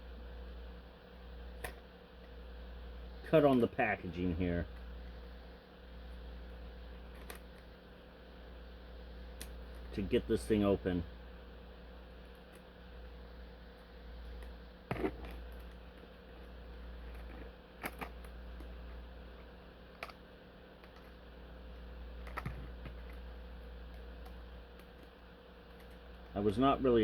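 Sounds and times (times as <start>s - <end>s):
steady low hum: 0.0s - 27.0s
plastic clicks and crackles: 19.9s - 20.2s.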